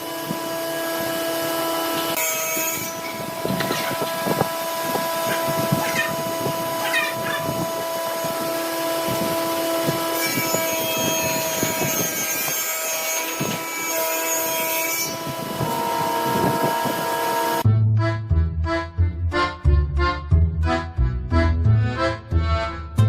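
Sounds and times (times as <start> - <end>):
wood lathe motor hum: 0.0 - 17.6.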